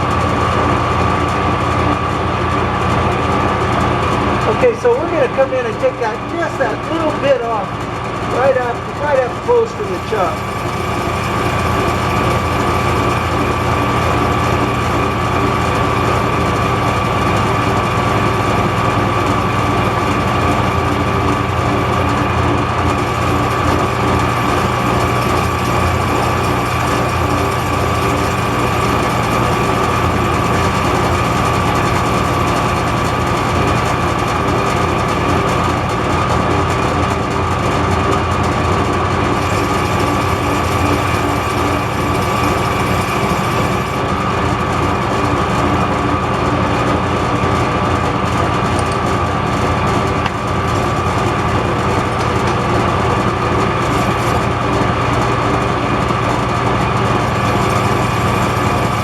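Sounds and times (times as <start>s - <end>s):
metal lathe whining: 0.0s - 59.0s.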